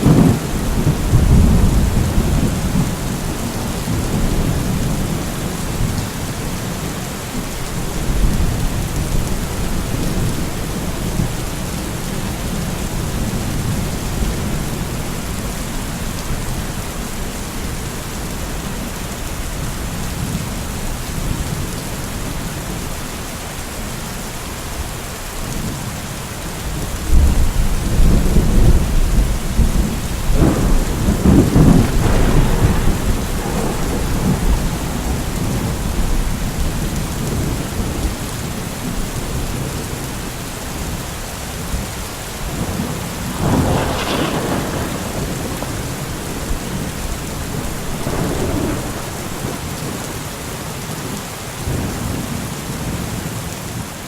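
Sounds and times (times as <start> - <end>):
sharp thunderclap: 0.0 - 5.9, 27.1 - 38.1, 42.5 - 50.1
low thunder rumble: 0.0 - 17.8, 26.6 - 41.0, 41.6 - 50.3
steady rain: 0.0 - 54.0.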